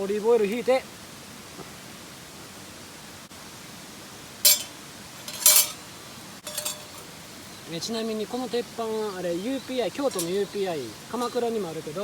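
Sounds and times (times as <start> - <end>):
background hiss: 0.0 - 12.0
cooking gear clinking: 4.5 - 7.2, 10.1 - 10.6.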